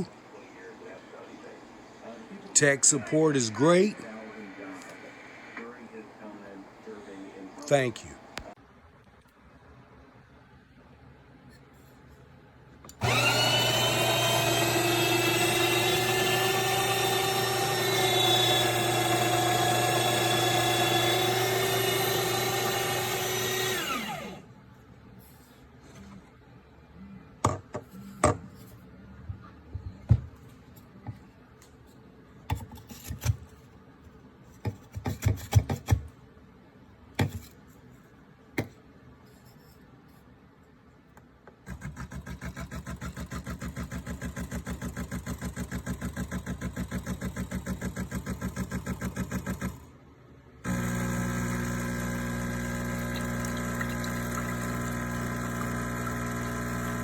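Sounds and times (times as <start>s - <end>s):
espresso machine humming: 13.0s - 24.4s, 41.7s - 49.8s, 50.7s - 57.0s.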